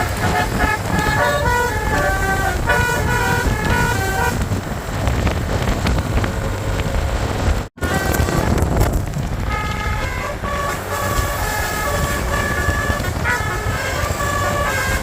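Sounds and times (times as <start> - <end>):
bus horn playing multi-tone tune: 0.0 - 4.6, 7.8 - 15.0.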